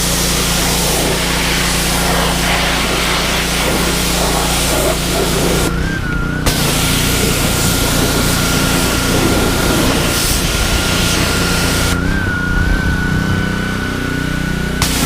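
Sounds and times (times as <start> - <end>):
water spray hissing: 0.0 - 5.7, 6.5 - 12.0
pressure washer engine running: 0.0 - 15.0.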